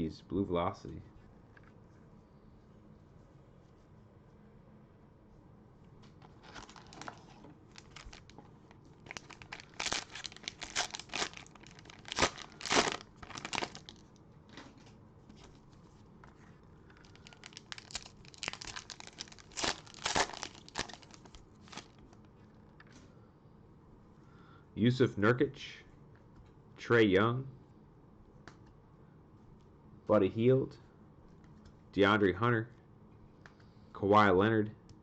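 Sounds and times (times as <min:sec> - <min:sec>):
cellophane wrapper crinkling and tearing: 0:06.2 - 0:08.4, 0:09.0 - 0:14.1, 0:16.9 - 0:22.1.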